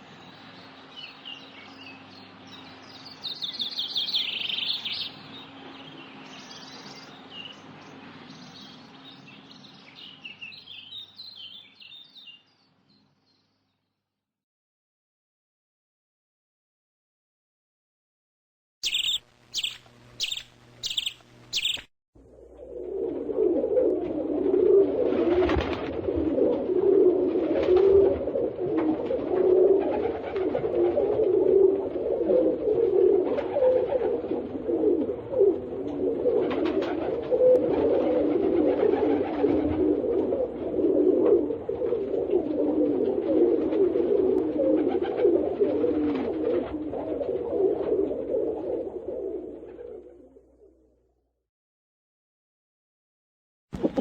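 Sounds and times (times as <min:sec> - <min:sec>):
pigeons cooing: 0:18.8 - 0:21.8, 0:22.9 - 0:50.5, 0:53.8 - 0:54.0
short high chirps: 0:18.8 - 0:21.9.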